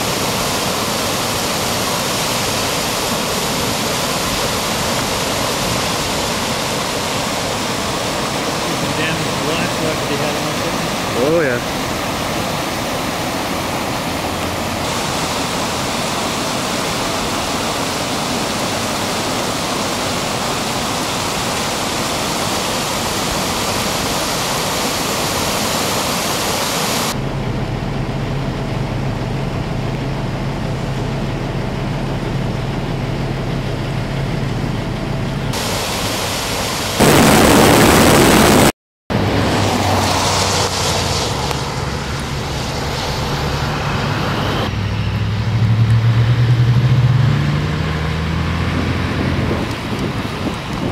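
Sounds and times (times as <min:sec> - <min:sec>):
low engine hum: 0:00.0 - 0:19.4, 0:27.1 - 0:35.8, 0:38.2 - 0:50.9
rushing floodwater: 0:00.0 - 0:50.9
vehicle passing: 0:39.1 - 0:49.7.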